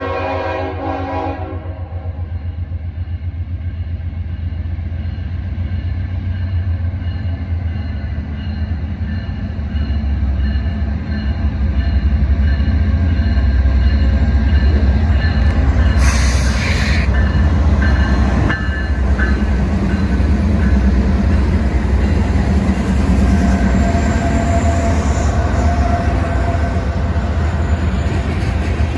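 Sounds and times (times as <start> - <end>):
train air horn: 0.0 - 2.3, 16.0 - 17.1
deep train rumble: 0.0 - 28.9
short hiss: 16.0 - 17.1.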